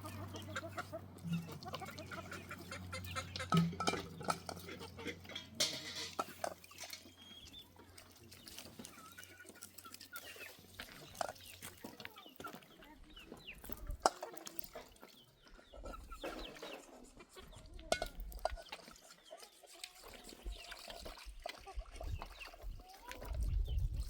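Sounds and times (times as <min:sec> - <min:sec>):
chickens clucking: 0:00.0 - 0:24.0.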